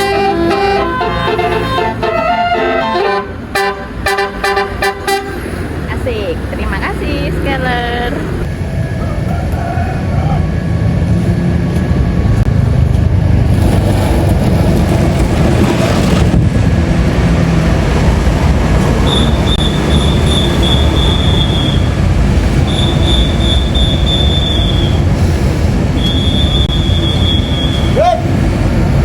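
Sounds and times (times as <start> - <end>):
diesel bus engine rumbling: 0.0 - 29.0
road traffic: 0.0 - 29.0
high-pitched squealing tones: 18.8 - 28.4.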